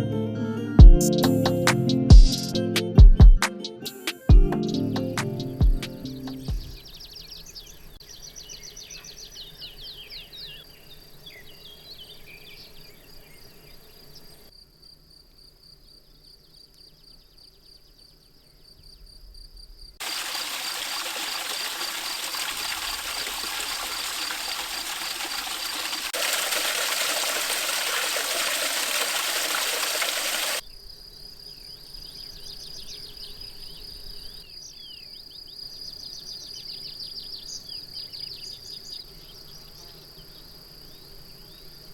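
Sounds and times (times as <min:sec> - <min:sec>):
bird calls: 0:05.8 - 0:14.4, 0:20.0 - 0:30.6
high insect trill: 0:20.0 - 0:32.4.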